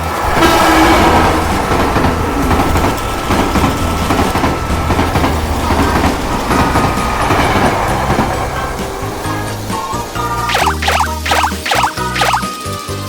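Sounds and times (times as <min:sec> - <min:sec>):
wheels clicking over track joints: 0:00.0 - 0:10.5
toy train motors whirring: 0:10.3 - 0:13.0.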